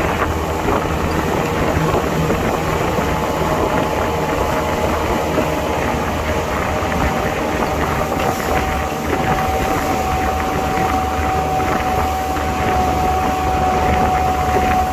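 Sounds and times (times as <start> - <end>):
vehicle engine running: 0.0 - 11.4.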